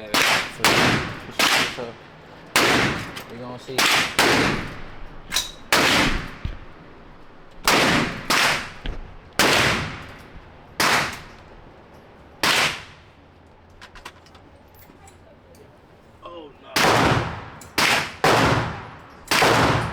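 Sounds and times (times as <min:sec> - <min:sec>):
gunshots echoing: 0:00.0 - 0:11.5, 0:12.4 - 0:13.1, 0:16.7 - 0:19.9.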